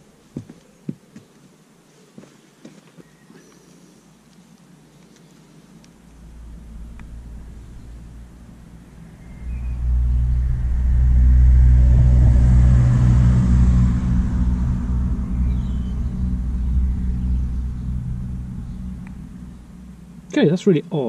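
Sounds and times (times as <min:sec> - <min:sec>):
vehicle engine driving past: 0:06.0 - 0:20.8.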